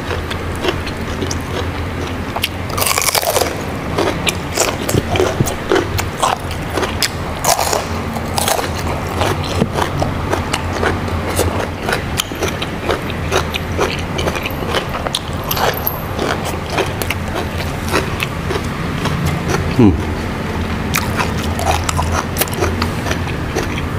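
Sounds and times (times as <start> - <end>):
person chewing food: 0.0 - 23.9
steady low hum: 0.0 - 23.9.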